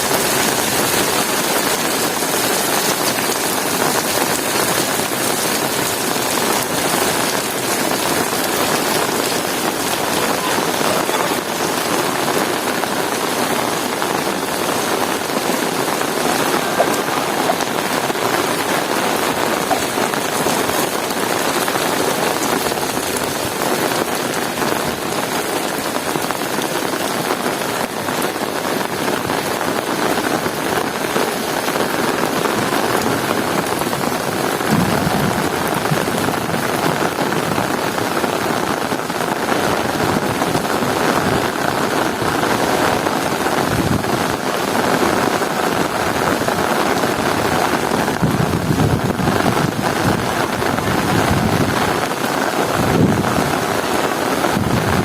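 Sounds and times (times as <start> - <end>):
heavy rain falling: 0.0 - 55.0.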